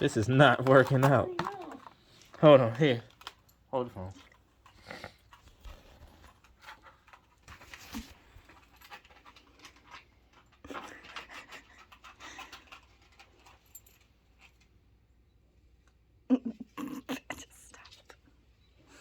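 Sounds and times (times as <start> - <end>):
puppy breathing and moving: 0.0 - 14.6
light clicks and scrapes: 0.0 - 14.8.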